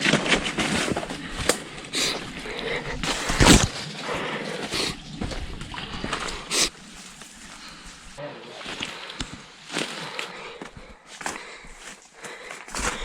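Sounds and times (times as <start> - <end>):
footsteps crunching on trail: 0.0 - 13.0
brushing through vegetation: 5.9 - 8.2.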